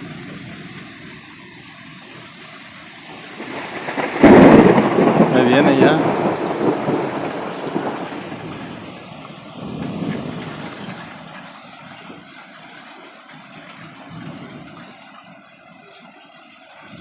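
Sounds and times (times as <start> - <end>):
rain hissing: 0.0 - 16.0
thunder rumbling: 3.1 - 11.3.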